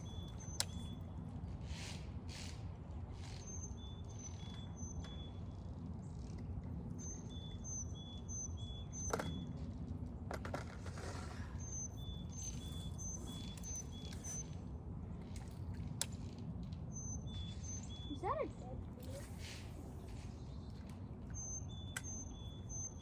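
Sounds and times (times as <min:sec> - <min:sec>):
bird chirping: 0:07.0 - 0:09.2, 0:11.6 - 0:14.5, 0:16.9 - 0:19.3, 0:20.2 - 0:23.0.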